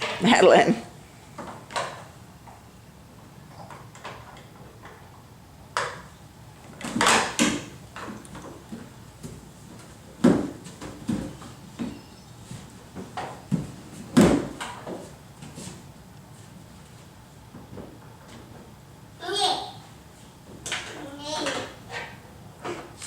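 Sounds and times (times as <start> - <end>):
knocks against furniture: 6.8 - 15.6.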